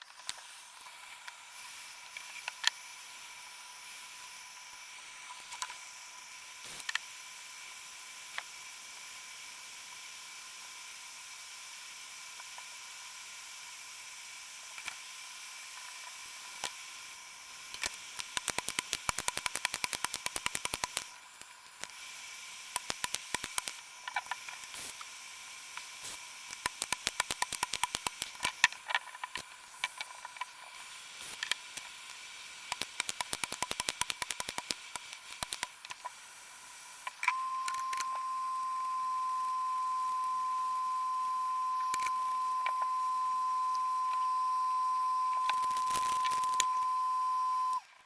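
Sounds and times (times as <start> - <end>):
recording hiss with faint whine: 15.4 - 48.0
small sharp plastic clicks: 17.7 - 22.0, 22.8 - 25.1, 26.1 - 30.5, 31.3 - 36.1.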